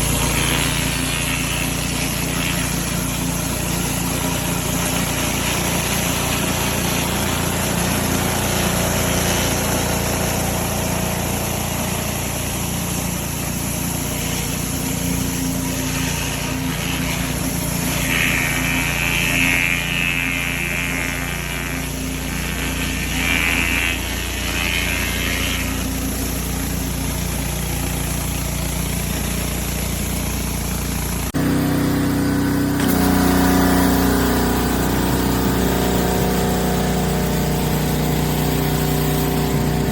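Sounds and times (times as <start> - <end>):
water spray hissing: 0.0 - 26.7
small gas engine running: 0.0 - 39.9.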